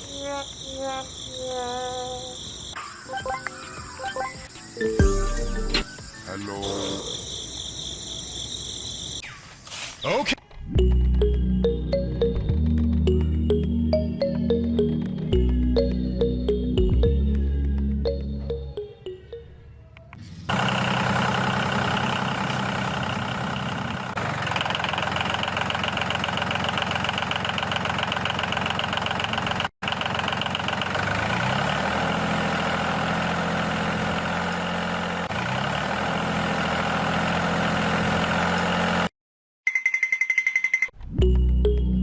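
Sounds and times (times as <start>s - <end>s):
small engine running: 20.4s - 39.1s.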